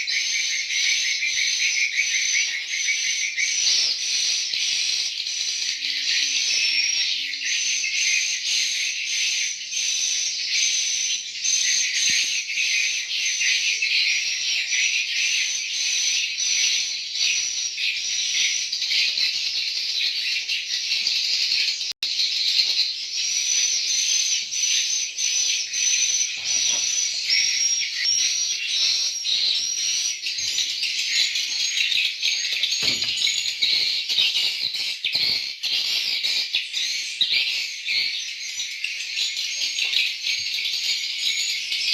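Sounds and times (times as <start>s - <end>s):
swiftlets twittering and chirping: 0.0s - 41.9s.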